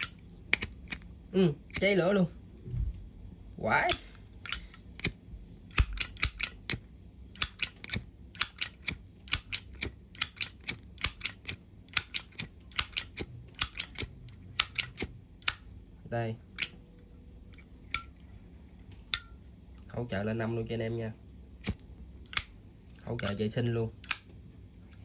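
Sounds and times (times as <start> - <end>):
lighter lid metallic clicks: 7.4 - 15.6, 21.6 - 22.6.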